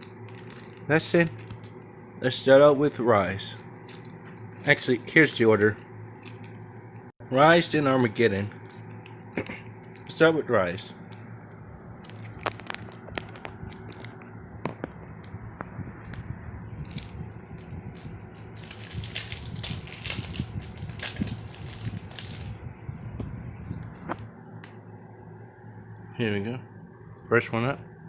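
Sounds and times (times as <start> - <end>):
foil wrapper crinkling and tearing: 0.0 - 6.8, 7.5 - 10.3, 12.0 - 15.3, 16.8 - 22.6.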